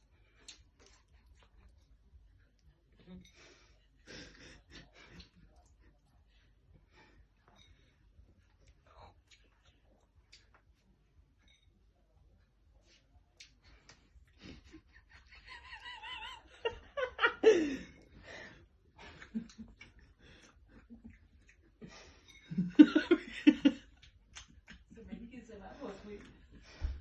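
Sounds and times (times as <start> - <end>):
people laughing: 4.1 - 5.7, 14.4 - 18.1, 22.5 - 24.0.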